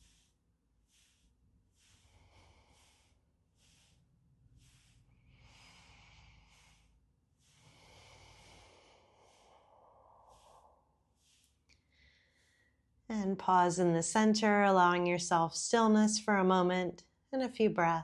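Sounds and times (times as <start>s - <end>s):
soft rustling on a mat: 0.0s - 12.6s
faint breathing: 0.0s - 12.9s.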